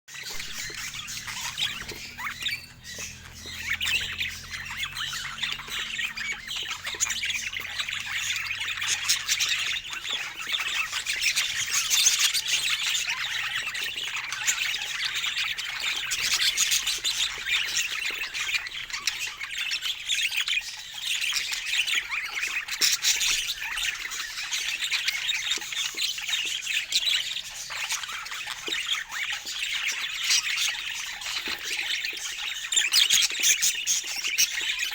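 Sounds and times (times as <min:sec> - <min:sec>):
budgerigars chattering: 0:00.1 - 0:34.9.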